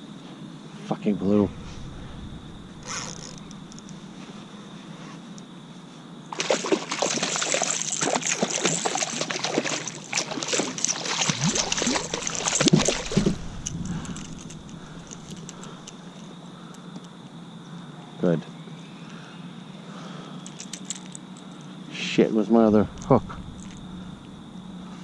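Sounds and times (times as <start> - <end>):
fish splashing in water: 6.3 - 16.2.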